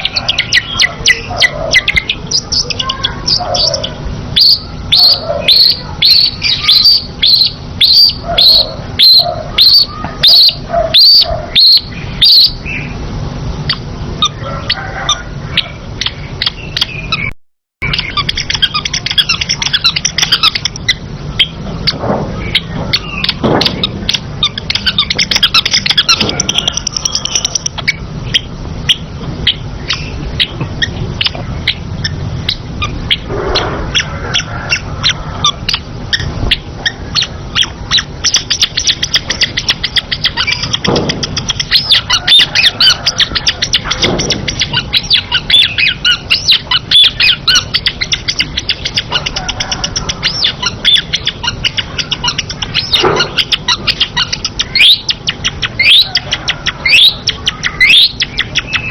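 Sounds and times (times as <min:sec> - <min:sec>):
shrike harsh chattering song: 0:00.0 - 0:58.9.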